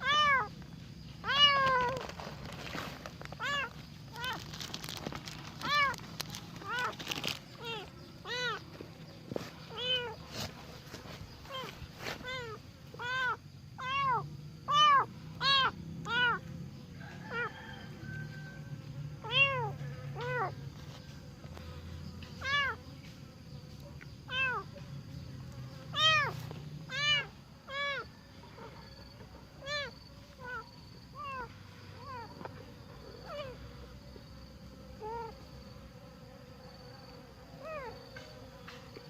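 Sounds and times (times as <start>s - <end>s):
kitten meowing: 0.0s - 0.5s, 1.2s - 2.0s, 3.4s - 4.4s, 5.6s - 6.0s, 7.6s - 8.6s, 11.5s - 16.4s, 24.3s - 24.6s.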